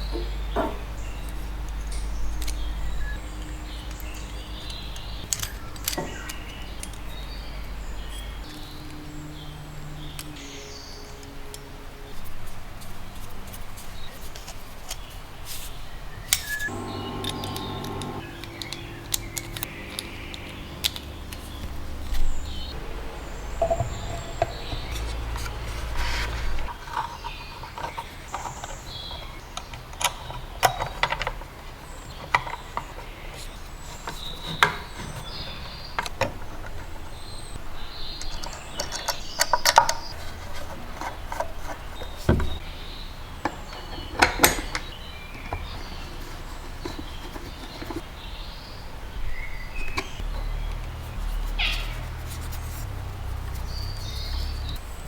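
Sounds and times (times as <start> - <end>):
small hard parts clattering: 0.0 - 9.0
steady hum: 12.0 - 26.7.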